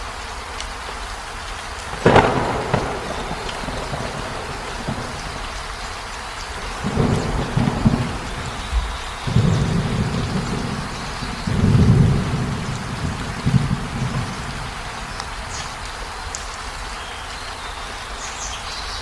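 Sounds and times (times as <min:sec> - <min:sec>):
steady rain: 0:00.0 - 0:19.0
thunder crack: 0:01.9 - 0:15.6
rolling thunder rumbles: 0:01.9 - 0:16.0.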